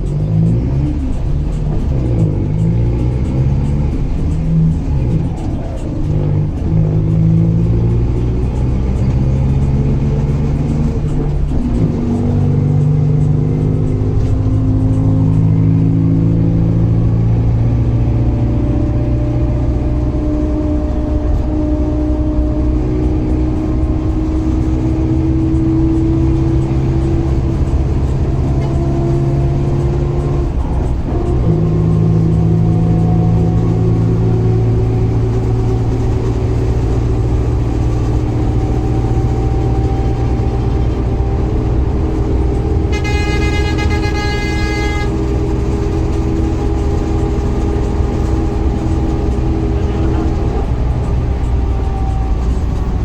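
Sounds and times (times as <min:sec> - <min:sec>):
diesel bus engine running: 0:00.0 - 0:53.0.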